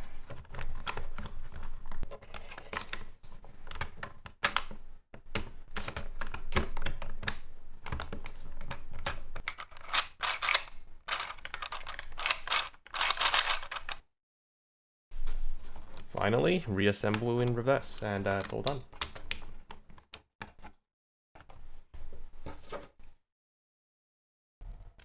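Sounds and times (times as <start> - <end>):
plastic toy clicks and taps: 9.4 - 14.0.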